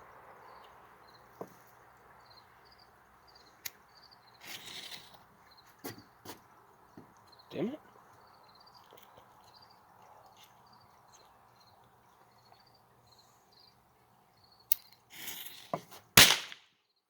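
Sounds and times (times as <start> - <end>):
firecracker fuse hissing: 15.1 - 16.6
firecracker bang: 16.2 - 16.6.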